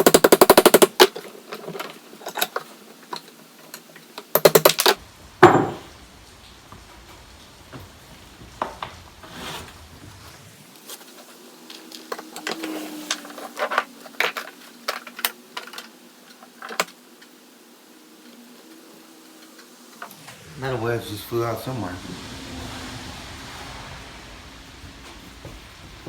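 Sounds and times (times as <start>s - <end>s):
faint steady hum: 5.0s - 15.3s, 17.9s - 26.0s.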